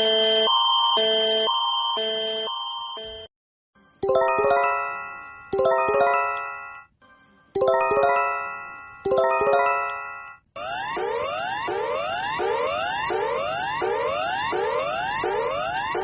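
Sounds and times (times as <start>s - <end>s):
alert chime notes: 4.0s - 6.8s, 7.6s - 10.4s.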